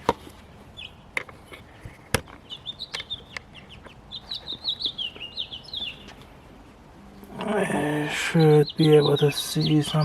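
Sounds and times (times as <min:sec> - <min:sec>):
small bird chirping: 0:00.7 - 0:01.1, 0:02.3 - 0:06.3, 0:07.5 - 0:10.0.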